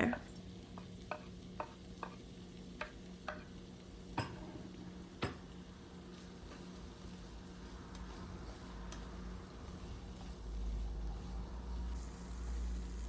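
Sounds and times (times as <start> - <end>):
spoon knocking in frying pan: 0.0 - 5.6
faint sizzle: 0.0 - 13.0.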